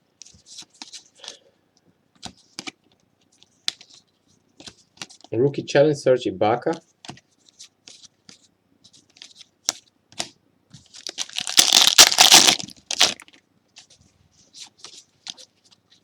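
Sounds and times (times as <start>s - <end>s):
wrapper crinkling and tearing: 10.9s - 13.4s.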